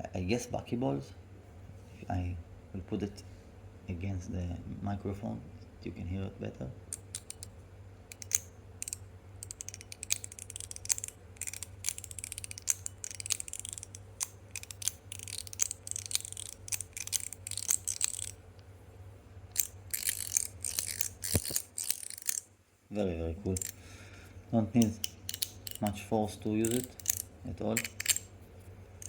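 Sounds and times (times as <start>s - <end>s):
metal slider fidget clicking: 6.9s - 7.5s, 8.1s - 18.4s, 19.5s - 22.4s, 23.5s - 23.8s, 24.8s - 25.9s, 26.6s - 28.3s.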